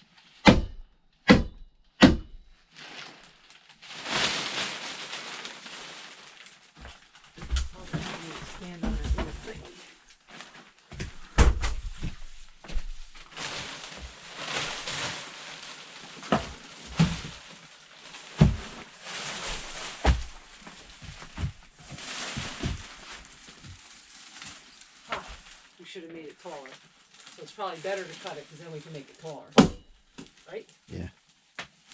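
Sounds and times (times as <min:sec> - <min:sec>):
knocks and thumps: 0:00.5 - 0:02.5, 0:07.4 - 0:09.6, 0:19.9 - 0:20.4
rustling hiss: 0:12.6 - 0:29.5.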